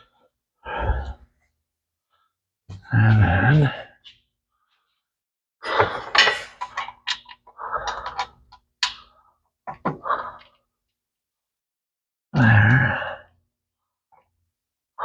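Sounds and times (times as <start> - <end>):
person grunting: 2.8 - 4.0, 12.4 - 13.2
metal tools clinking and scraping: 5.6 - 7.4.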